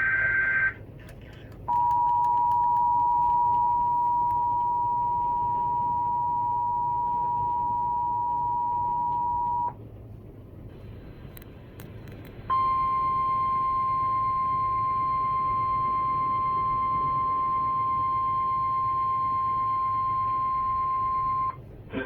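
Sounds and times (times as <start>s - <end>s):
single steady tone: 1.7s - 9.8s, 12.5s - 21.6s.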